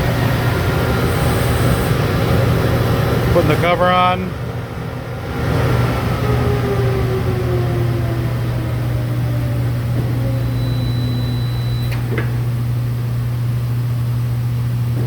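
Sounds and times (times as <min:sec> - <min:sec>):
machine motor hum: 0:00.0 - 0:03.8, 0:06.2 - 0:15.0
high beep: 0:10.6 - 0:12.0.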